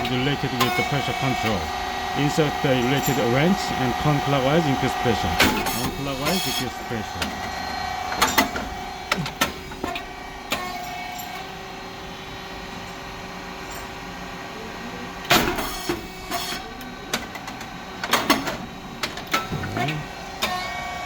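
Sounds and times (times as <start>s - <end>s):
machine motor hum: 0.0s - 21.0s.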